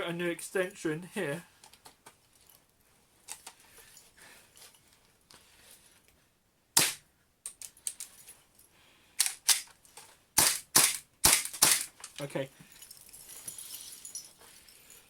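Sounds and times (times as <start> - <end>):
airsoft pistol shots: 6.8 - 7.0, 10.4 - 11.9.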